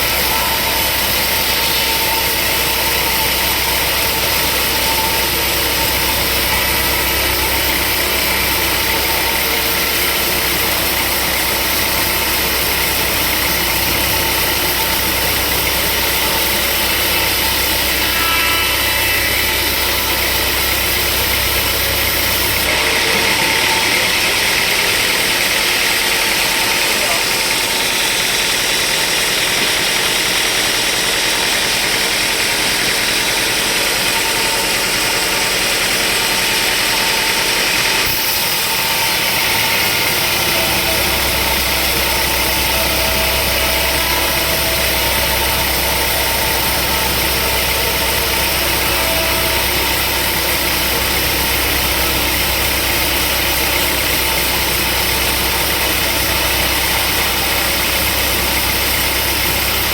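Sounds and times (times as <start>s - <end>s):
sawmill machinery drone: 0.0s - 59.9s
deeper hum: 38.0s - 59.9s.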